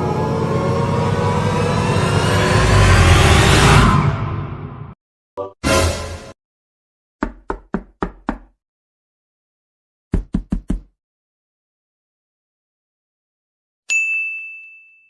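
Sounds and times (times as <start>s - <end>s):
knocking on a door: 7.2s - 8.6s, 10.1s - 10.9s.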